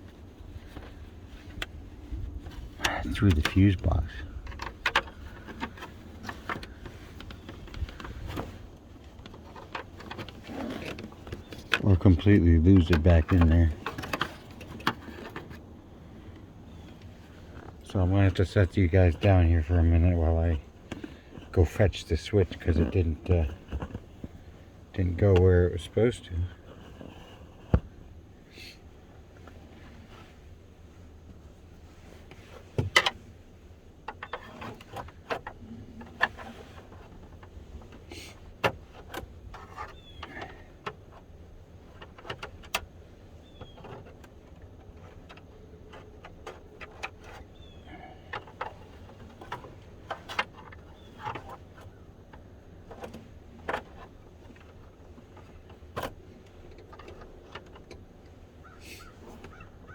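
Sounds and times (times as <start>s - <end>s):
low steady background hum: 0.0s - 59.9s
clicks and scrapes of small parts: 2.4s - 18.4s, 34.0s - 59.9s.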